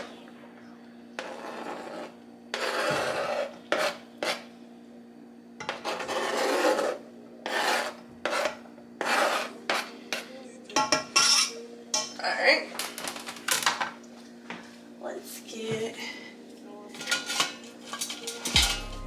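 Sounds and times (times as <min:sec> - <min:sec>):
low hum: 0:00.0 - 0:02.5, 0:18.5 - 0:19.0
utensil scraping in a pot: 0:01.2 - 0:04.6, 0:05.6 - 0:10.3, 0:10.9 - 0:11.6.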